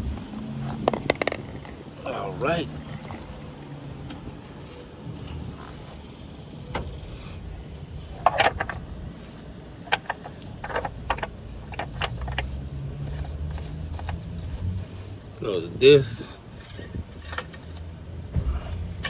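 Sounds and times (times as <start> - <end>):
low steady hum: 1.4 - 19.0
light metallic clinks and rattles: 16.5 - 17.9.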